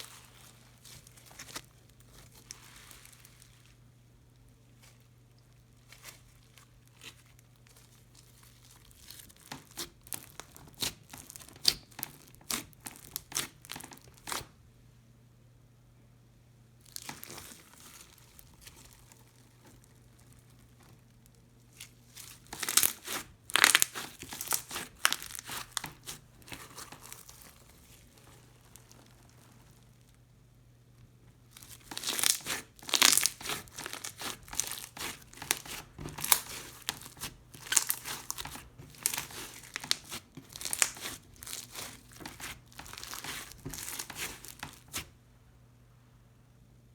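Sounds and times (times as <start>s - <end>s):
slime crackling and popping: 5.8s - 14.5s, 16.8s - 30.2s, 31.5s - 45.1s.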